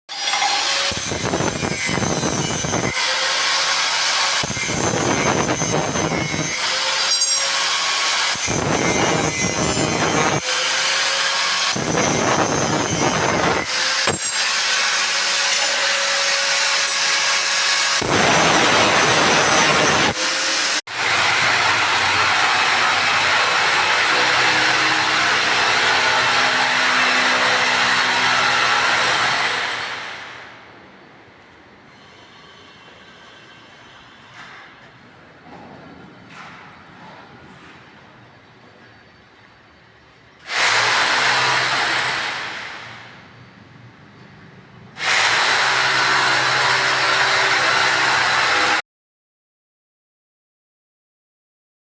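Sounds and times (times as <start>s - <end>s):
power tool running: 0.2s - 30.0s
small motor rushing and humming: 11.7s - 21.1s.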